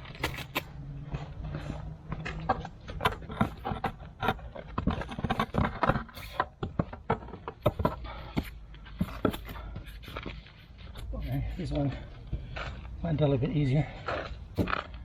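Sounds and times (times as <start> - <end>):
stone tread being knocked: 2.5 - 9.6.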